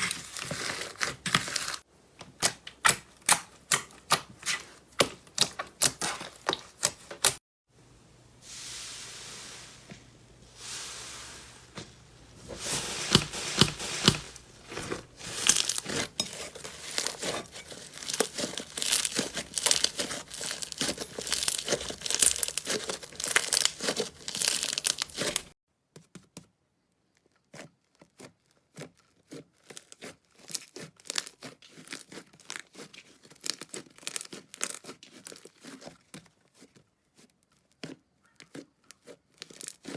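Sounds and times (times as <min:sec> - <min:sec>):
slime squished by hand: 0:00.0 - 0:07.4, 0:12.6 - 0:25.5.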